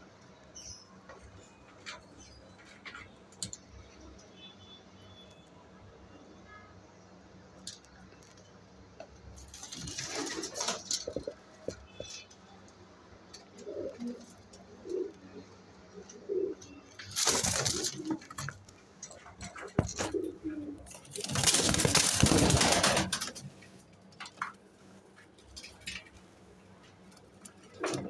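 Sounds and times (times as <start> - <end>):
pigeons cooing: 13.5 - 18.5, 19.5 - 23.4
loud rustling: 21.0 - 23.6.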